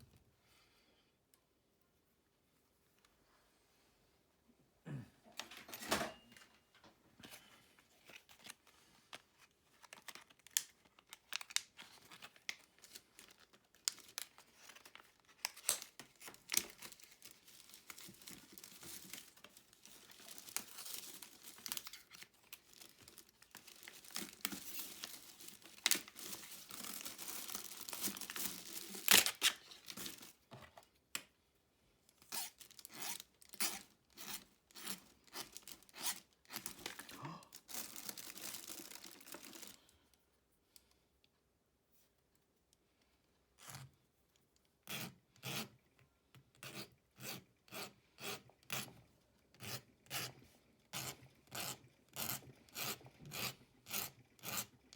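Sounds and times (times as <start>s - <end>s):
small objects rustling and clicking: 7.9s - 30.5s, 32.2s - 39.9s.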